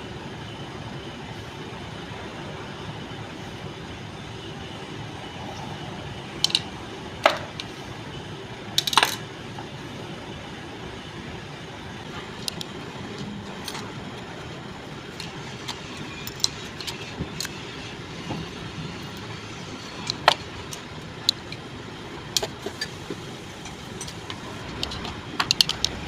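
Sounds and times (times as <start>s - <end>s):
steady background noise: 0.0s - 26.0s
metal parts clinking: 6.4s - 6.7s, 8.8s - 9.2s, 15.1s - 17.6s, 23.6s - 26.0s.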